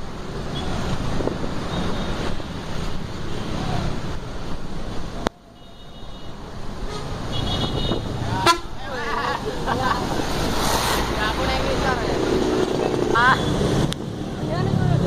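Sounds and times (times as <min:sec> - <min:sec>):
vehicle engine rumble: 0:00.0 - 0:15.0
wind buffeting microphone: 0:06.8 - 0:08.5.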